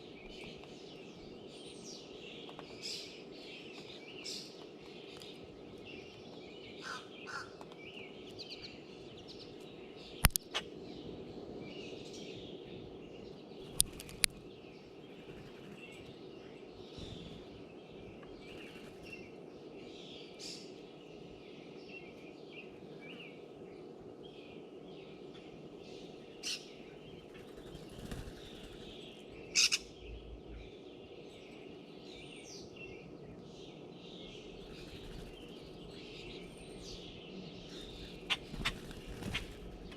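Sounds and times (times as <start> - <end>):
low background hum: 0.0 - 39.9
small birds chirping: 0.0 - 39.9
loud clicks near microphone: 10.2 - 10.6, 13.8 - 14.4.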